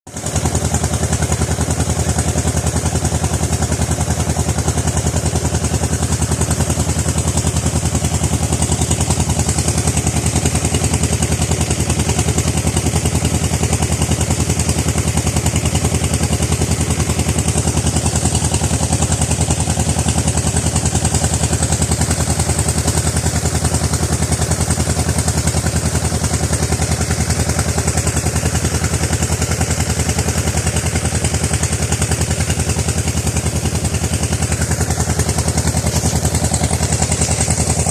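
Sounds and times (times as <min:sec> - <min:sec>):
small engine idling: 0:00.1 - 0:37.9.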